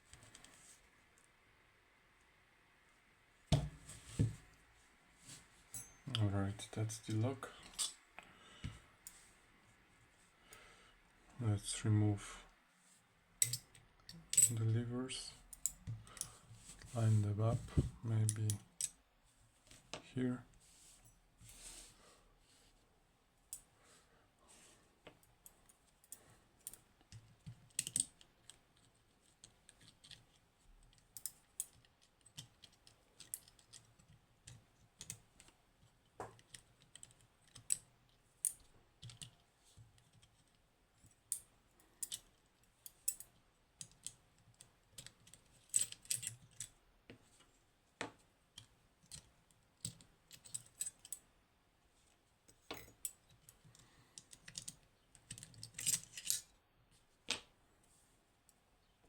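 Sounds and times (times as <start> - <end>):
small metal clicks and taps: 13.4 - 14.5, 30.9 - 35.6, 52.5 - 56.4.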